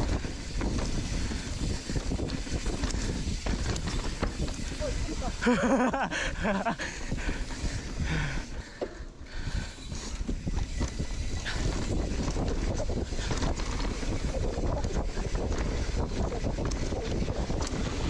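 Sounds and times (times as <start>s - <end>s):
bike knocks and rattles: 0.0s - 9.0s
wind buffeting microphone: 0.0s - 18.0s.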